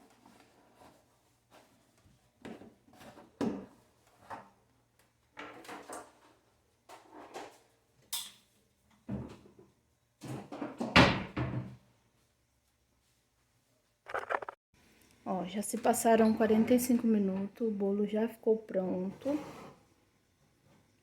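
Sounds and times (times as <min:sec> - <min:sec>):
kitchen items knocking and scraping: 0:14.1 - 0:14.6.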